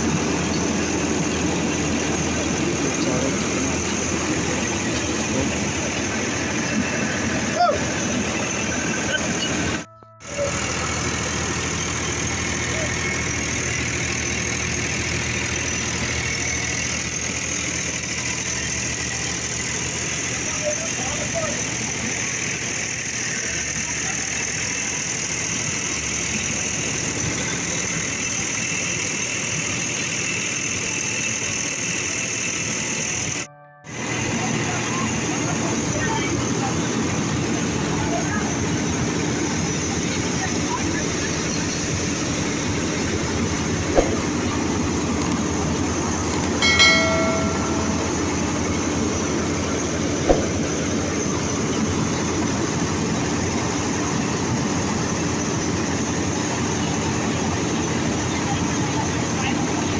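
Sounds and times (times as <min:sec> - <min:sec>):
tractor engine and thresher drone: 0:00.0 - 0:59.9
brief ringing tone: 0:09.4 - 0:12.3, 0:46.6 - 0:49.0
sharp knocks: 0:43.9 - 0:44.4, 0:50.3 - 0:50.6.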